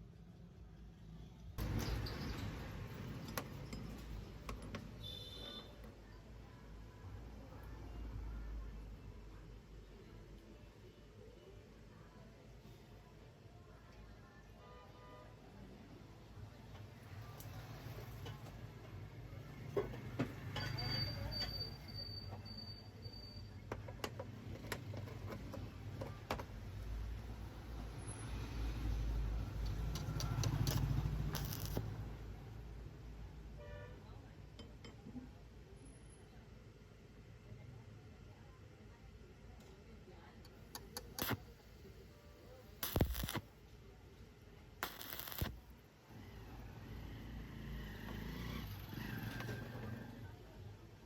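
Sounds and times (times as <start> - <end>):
sharp burst of hiss: 42.8 - 43.4, 44.8 - 45.5.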